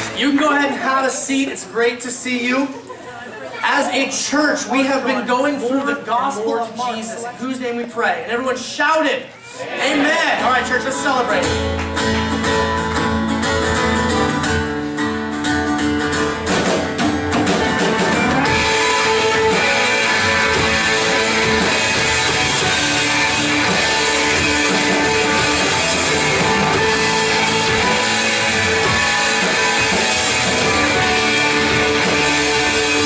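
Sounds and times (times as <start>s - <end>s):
rhythmic guitar strumming: 0.0s - 1.4s, 9.9s - 33.0s
drums: 0.0s - 2.8s, 10.0s - 33.0s
band playing: 9.7s - 33.0s.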